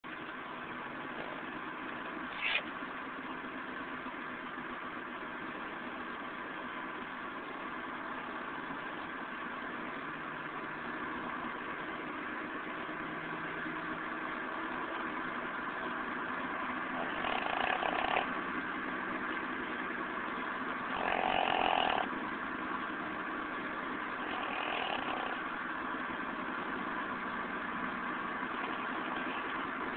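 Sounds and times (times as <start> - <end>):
car engine and road hum: 0.0 - 29.9
pet snoring: 17.0 - 18.4, 20.9 - 22.1, 24.2 - 25.5.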